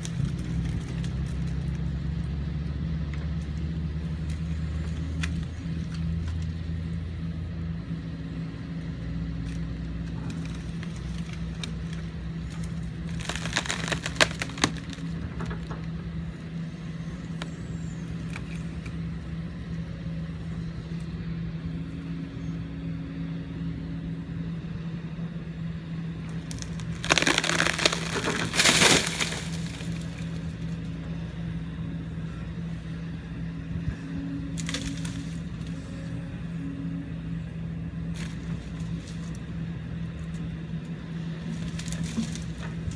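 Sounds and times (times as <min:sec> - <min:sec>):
wood cracking and snapping: 0:00.0 - 0:02.4, 0:03.1 - 0:06.5, 0:09.3 - 0:19.0, 0:26.2 - 0:30.9, 0:34.6 - 0:35.8, 0:38.2 - 0:39.5, 0:41.4 - 0:42.9
excavator diesel engine running: 0:00.0 - 0:42.9.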